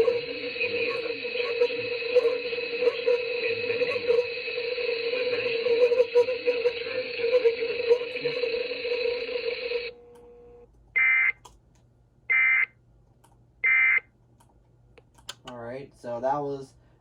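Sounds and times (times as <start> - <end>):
radio signal hiss: 0.0 - 9.9
shrill digital data bursts: 0.0 - 9.9
steady hum: 0.0 - 10.6.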